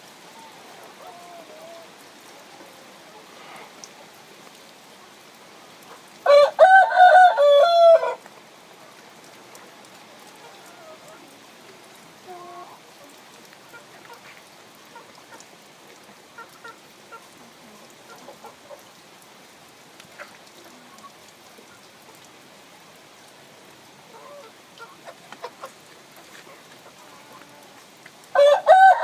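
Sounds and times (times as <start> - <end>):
background hiss: 0.0 - 29.0
chickens clucking: 0.3 - 3.9, 9.6 - 11.4, 12.2 - 12.8, 24.1 - 27.8.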